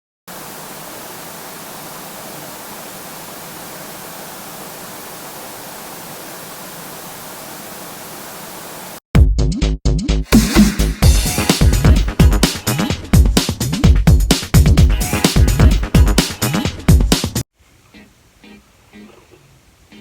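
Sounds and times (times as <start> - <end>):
static hiss: 0.3 - 9.0
electronic dance music: 10.2 - 17.4.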